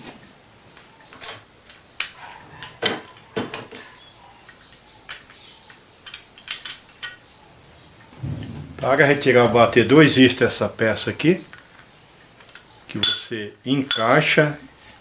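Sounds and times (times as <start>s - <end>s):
metal tools clinking: 4.5s - 7.4s, 11.5s - 14.3s.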